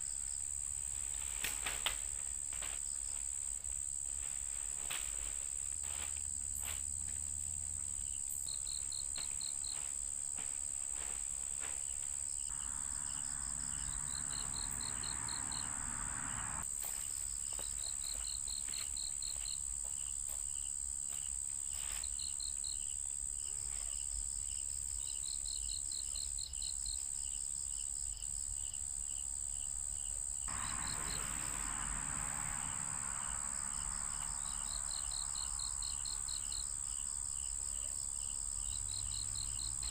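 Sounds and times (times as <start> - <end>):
insects chirping: 0.0 - 20.8, 21.7 - 39.9
crickets trilling: 0.1 - 20.2, 22.1 - 39.9
rushing hiss: 30.5 - 35.6.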